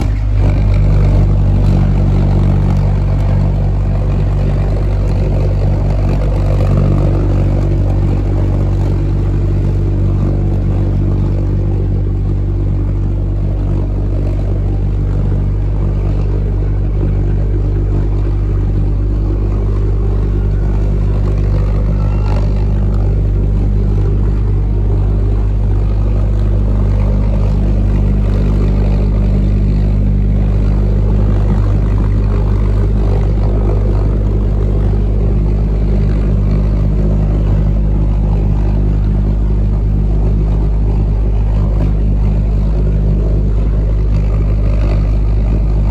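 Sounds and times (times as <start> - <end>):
pulse jet engine buzzing: 0.0 - 45.9.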